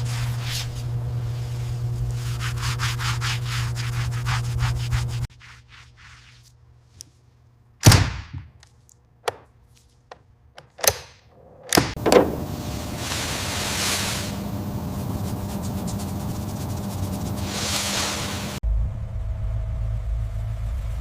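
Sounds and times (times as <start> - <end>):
steady rumble: 0.0 - 5.3, 11.7 - 21.0.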